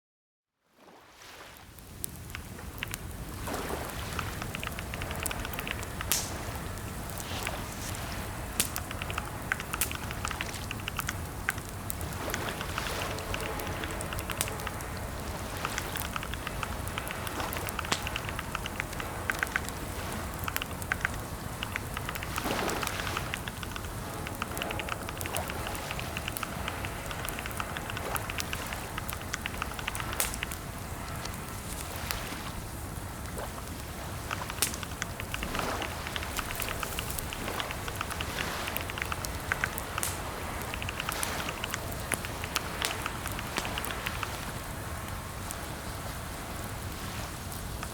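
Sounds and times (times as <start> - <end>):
low steady hum: 1.9 - 47.9
keyboard typing: 3.9 - 30.6, 34.3 - 44.5.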